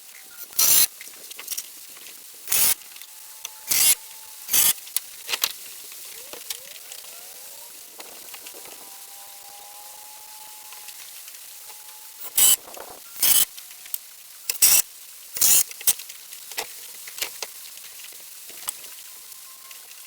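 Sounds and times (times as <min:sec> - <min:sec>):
power driver driving screws into wood: 0:00.4 - 0:00.9, 0:02.5 - 0:02.8, 0:03.6 - 0:05.5, 0:12.2 - 0:13.5, 0:14.5 - 0:14.8, 0:15.4 - 0:15.7.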